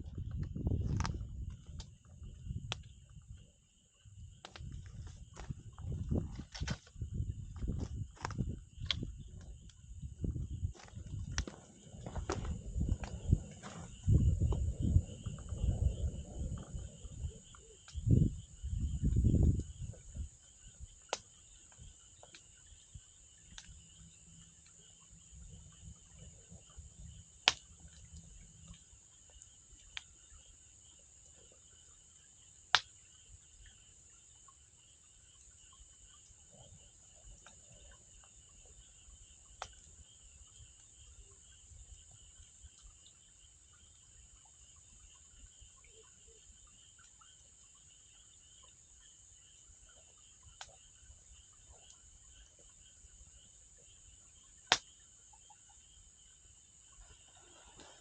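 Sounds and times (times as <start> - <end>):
insects chirring: 0.0 - 58.0
wood fire popping: 0.1 - 3.3, 4.2 - 7.0, 7.6 - 18.1.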